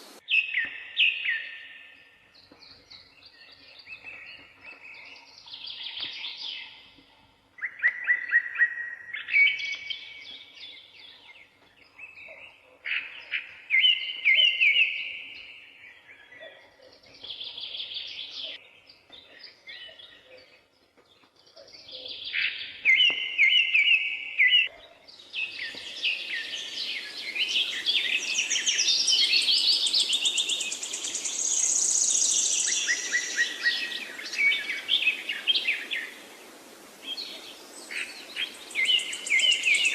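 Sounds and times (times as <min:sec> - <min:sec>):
steady background hiss: 0:00.0 - 0:00.2, 0:25.2 - 0:39.9
songbirds singing: 0:00.0 - 0:39.9.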